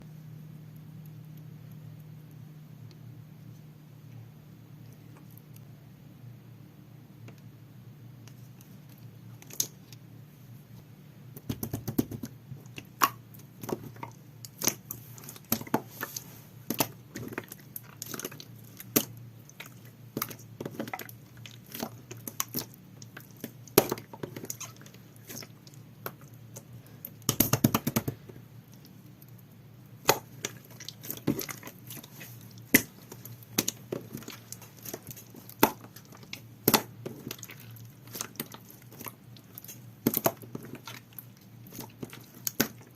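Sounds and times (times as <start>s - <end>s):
slime crackling: 11.4s - 42.9s.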